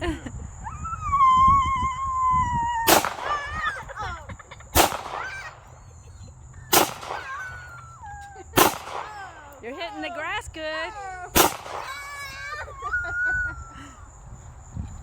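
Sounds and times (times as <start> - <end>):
gunshots: 2.9 - 3.8, 4.7 - 5.8, 6.7 - 7.9, 8.6 - 9.6, 11.3 - 12.4.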